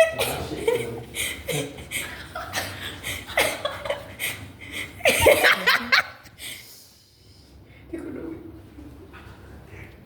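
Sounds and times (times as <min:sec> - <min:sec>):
people laughing and snickering: 0:00.0 - 0:06.2.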